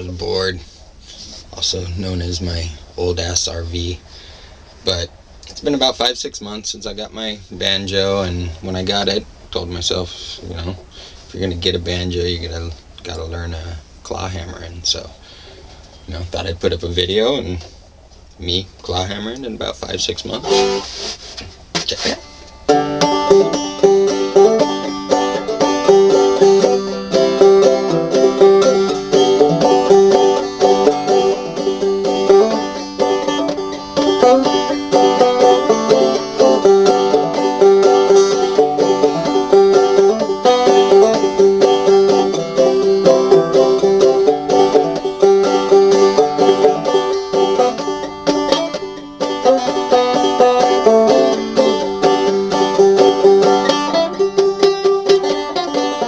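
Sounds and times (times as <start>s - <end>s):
banjo plucked notes: 20.1s - 21.0s, 21.8s - 56.0s.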